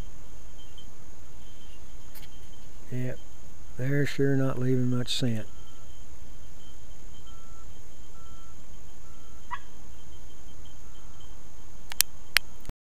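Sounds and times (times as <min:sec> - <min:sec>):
insect hum: 0:00.0 - 0:12.7
sharp clicks: 0:11.8 - 0:12.7.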